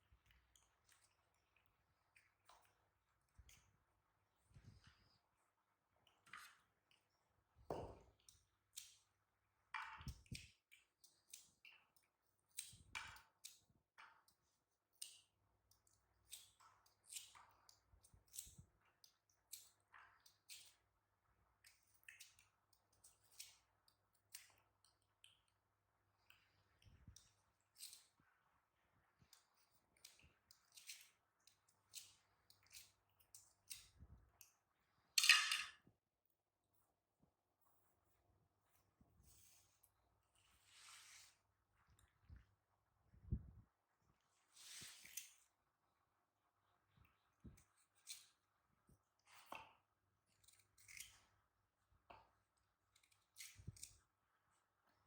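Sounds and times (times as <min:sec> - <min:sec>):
faint irregular clicks and taps: 0:00.0 - 0:05.2, 0:05.8 - 0:20.8, 0:21.6 - 0:28.2, 0:52.0 - 0:54.1.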